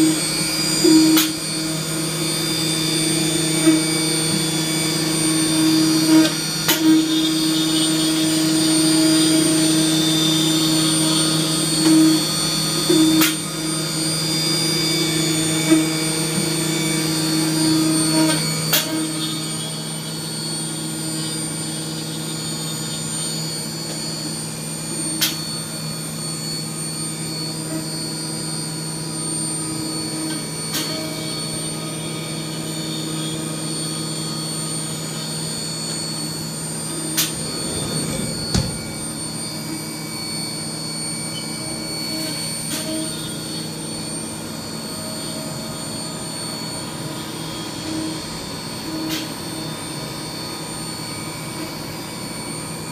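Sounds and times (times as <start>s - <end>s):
milling machine spindle whine: 0.0s - 52.9s.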